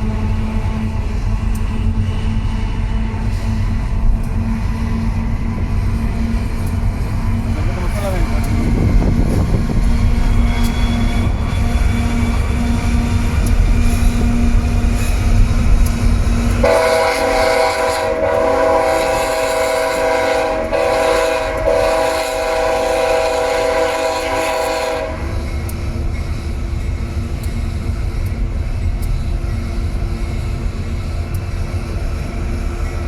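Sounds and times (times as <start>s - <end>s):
multi-tone train horn: 0.0s - 1.4s, 7.6s - 15.9s, 16.5s - 25.6s
locomotive rumbling: 0.0s - 33.0s.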